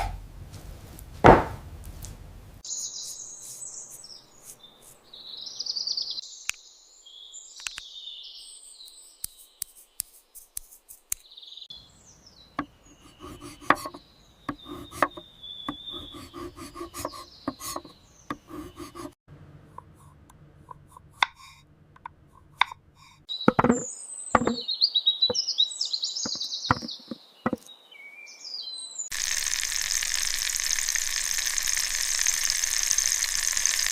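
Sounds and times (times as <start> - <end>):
birds chirping: 2.6 - 10.2, 11.2 - 19.2, 22.5 - 33.9
kitchen utensils knocking: 23.5 - 24.6
rhythmic rubbing or scraping: 29.1 - 33.9.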